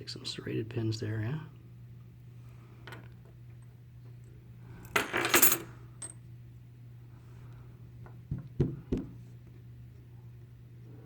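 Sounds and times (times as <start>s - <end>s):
metal pins clattering on hard surface: 4.8s - 6.1s.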